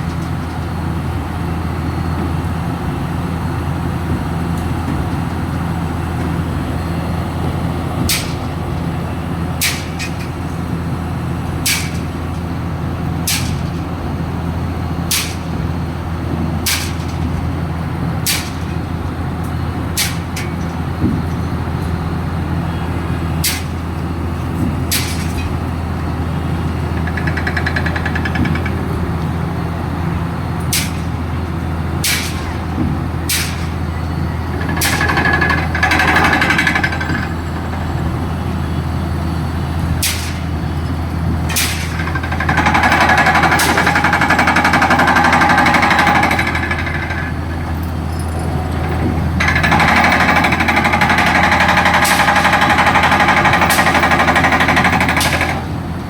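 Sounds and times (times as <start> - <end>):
diesel engine humming: 0.0 - 56.0
loud rapid rattling: 49.4 - 55.6.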